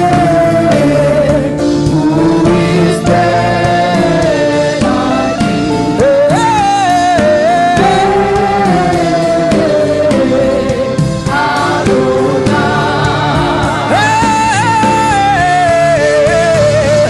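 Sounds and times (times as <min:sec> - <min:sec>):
choir singing: 0:00.0 - 0:17.0
gospel music: 0:00.0 - 0:17.0
lead voice singing: 0:00.0 - 0:17.0.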